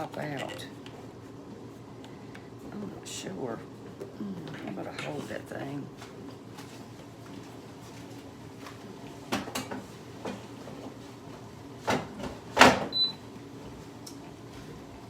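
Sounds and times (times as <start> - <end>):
air fryer knocks and clunks: 11.8 - 13.0.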